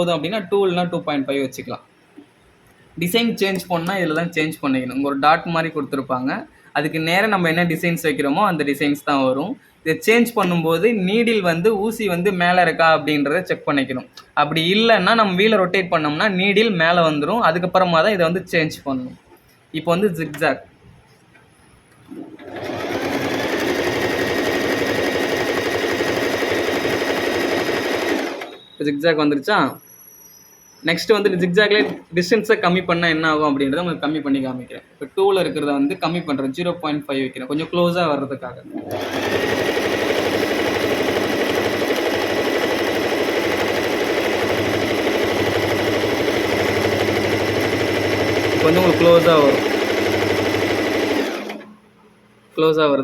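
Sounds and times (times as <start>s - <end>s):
electric sewing machine running: 22.1s - 28.6s, 38.7s - 51.7s.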